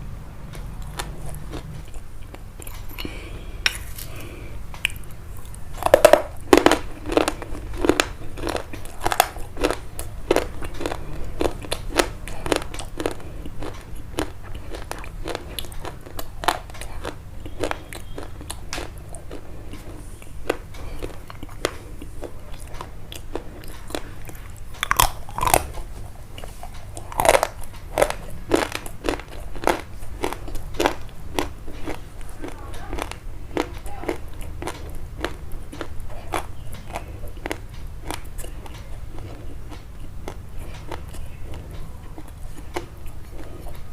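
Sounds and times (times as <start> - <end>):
crunching and chewing crisp food: 0.4 - 43.9.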